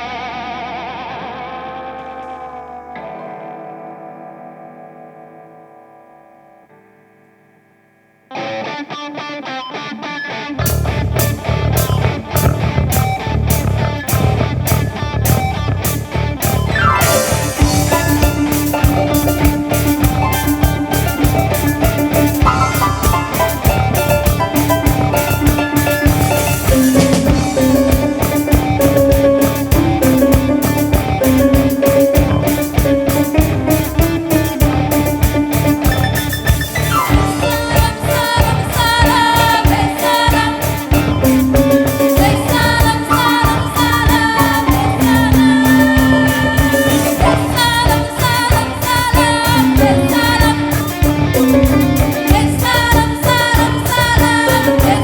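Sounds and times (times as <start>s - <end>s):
sustained melody lines: 10.8s - 55.0s
fast steady drumming: 11.2s - 55.0s.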